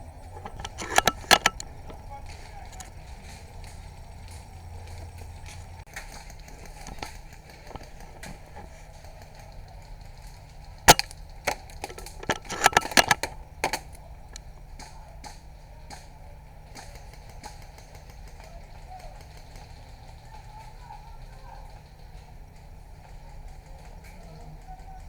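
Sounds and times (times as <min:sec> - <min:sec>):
airsoft gun shots: 0:11.9 - 0:13.8.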